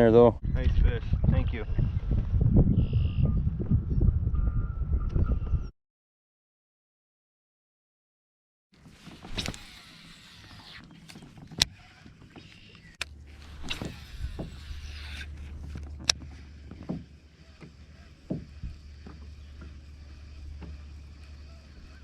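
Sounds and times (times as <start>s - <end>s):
paddle strokes swishing in water: 8.8s - 22.0s
steady low hum: 12.9s - 22.0s
paddle knocking against hull: 15.5s - 19.8s.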